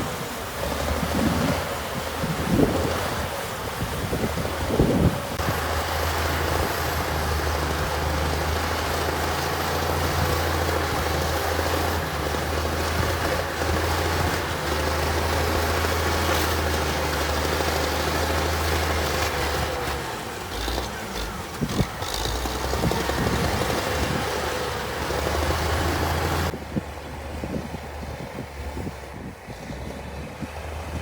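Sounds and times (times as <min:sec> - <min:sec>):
diesel engine droning: 0:00.0 - 0:31.0.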